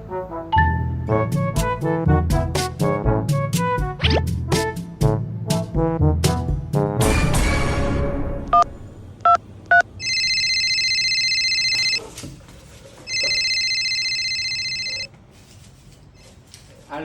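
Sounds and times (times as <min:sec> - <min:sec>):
telephone keypad beeps: 0:08.5 - 0:12.0, 0:13.1 - 0:15.1
phone ringing with fluttering trill: 0:10.0 - 0:12.0, 0:13.1 - 0:15.1.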